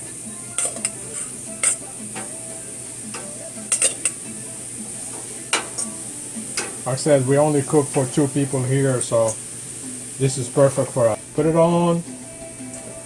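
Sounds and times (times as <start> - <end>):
eggplant sizzling on grill: 0.0 - 13.0
metal clicks on grate: 3.1 - 4.2, 5.1 - 5.9, 6.5 - 6.9.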